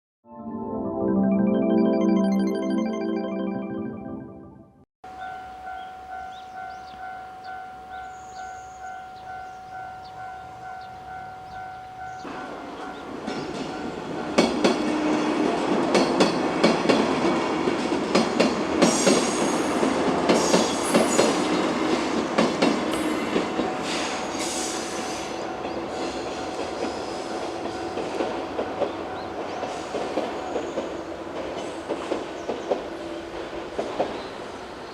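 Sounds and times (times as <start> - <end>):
electric train passing: 5.1 - 34.9.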